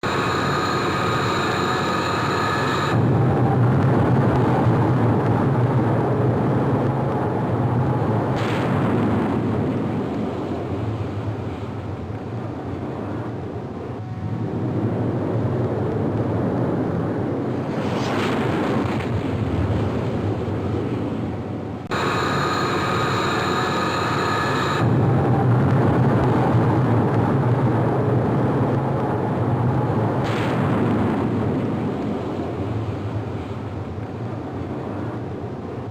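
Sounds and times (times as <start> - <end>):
airplane engines rushing: 0.0 - 35.9
high engine whine: 0.0 - 35.9.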